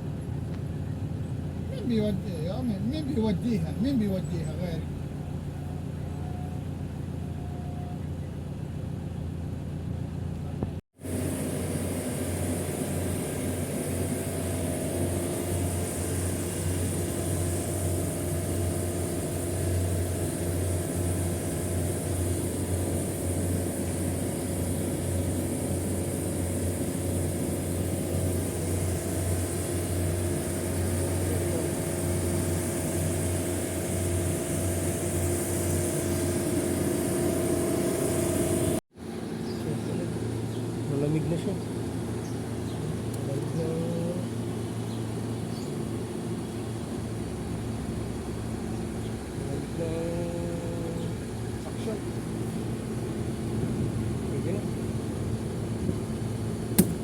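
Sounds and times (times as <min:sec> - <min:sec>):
vehicle engine humming: 0:00.0 - 0:57.0
hiss: 0:11.0 - 0:38.8.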